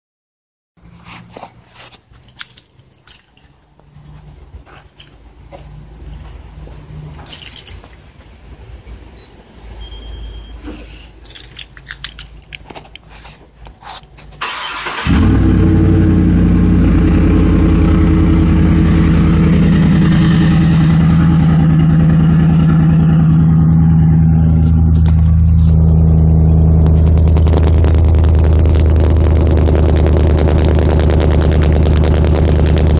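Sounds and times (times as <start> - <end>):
loud engine idling: 15.0 - 32.9
starter motor cranking: 26.8 - 32.9.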